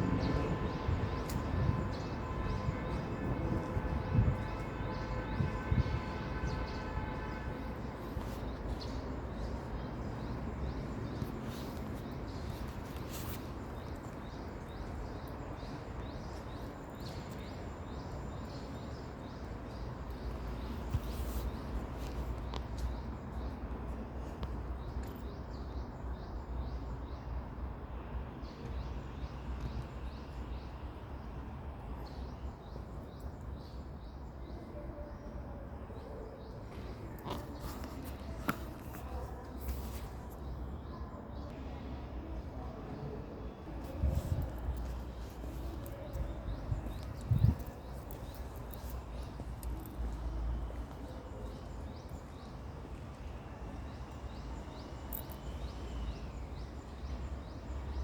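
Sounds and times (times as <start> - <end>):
wind rumble on microphone: 0.0 - 15.1, 43.7 - 49.8
small birds chirping: 6.5 - 27.3, 35.9 - 41.6, 43.6 - 58.0.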